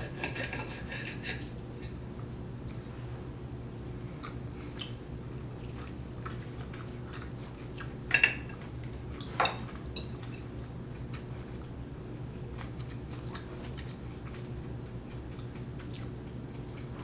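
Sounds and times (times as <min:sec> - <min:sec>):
cutlery clinking on a plate: 0:08.1 - 0:08.6, 0:09.4 - 0:10.4.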